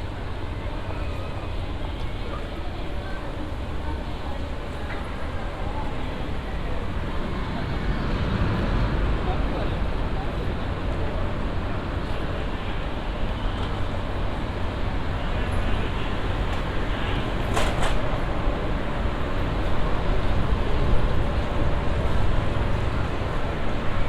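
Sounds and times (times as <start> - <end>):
low city rumble: 0.0 - 24.0.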